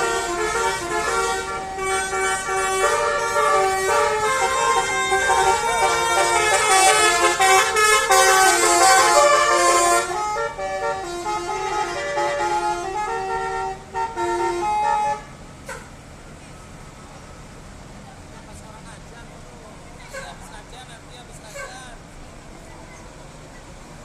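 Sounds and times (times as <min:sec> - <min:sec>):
bus horn playing a tune: 0:00.0 - 0:15.9, 0:20.0 - 0:20.5.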